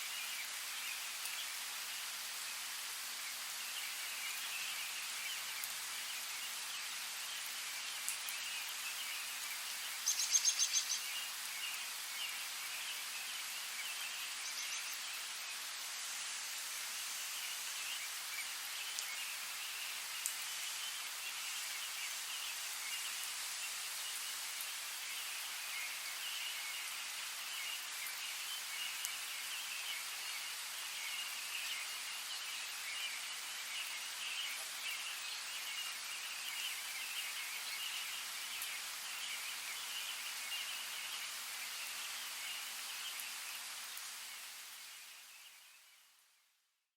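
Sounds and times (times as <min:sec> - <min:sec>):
steady rainfall: 0:00.0 - 0:46.3
birds singing: 0:08.2 - 0:15.3.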